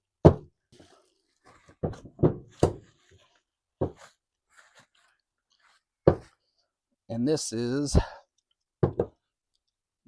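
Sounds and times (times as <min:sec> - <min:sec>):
parts knocking and thudding: 0:00.2 - 0:00.6, 0:01.5 - 0:03.2, 0:03.8 - 0:04.2, 0:06.0 - 0:06.4, 0:08.8 - 0:09.3.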